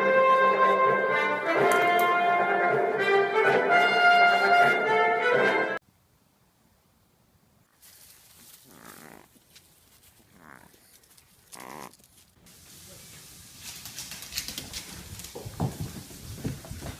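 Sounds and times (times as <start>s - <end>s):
animal calling: 8.6s - 9.4s, 10.3s - 12.0s.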